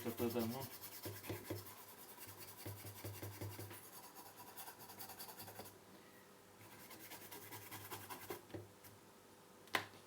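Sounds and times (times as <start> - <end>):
brush scrubbing circuit board: 0.0 - 5.7.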